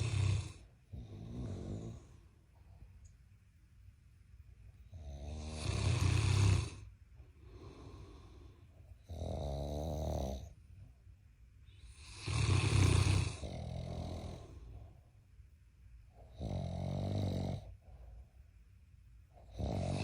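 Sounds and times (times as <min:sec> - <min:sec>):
loud rattling snores: 0:00.0 - 0:02.2, 0:05.0 - 0:06.8, 0:12.0 - 0:14.5, 0:16.4 - 0:17.7, 0:19.5 - 0:20.0
quiet breaths out: 0:06.0 - 0:09.1.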